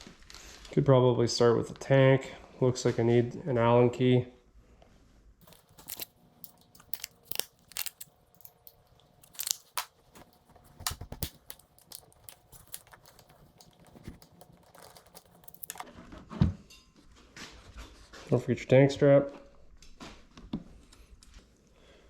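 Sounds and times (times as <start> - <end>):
hand tools clicking and clinking: 5.4 - 15.9.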